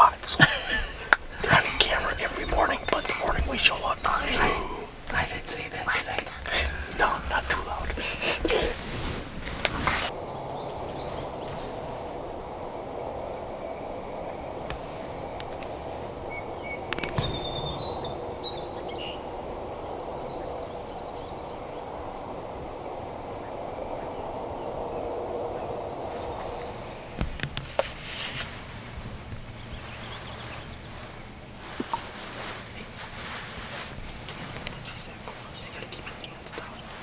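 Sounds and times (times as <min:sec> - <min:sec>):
outdoor background noise: 0:00.0 - 0:37.0
songbird chirps: 0:00.0 - 0:37.0
light knocks or rustles: 0:06.4 - 0:10.1, 0:26.2 - 0:37.0.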